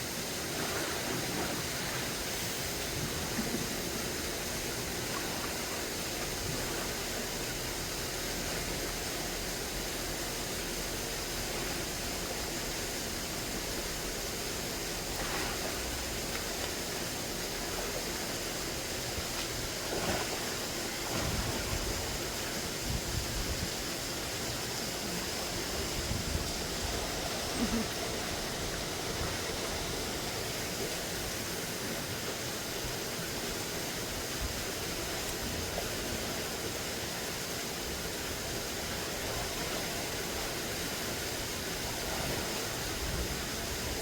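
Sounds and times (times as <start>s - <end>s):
rain falling: 24.2s - 40.4s.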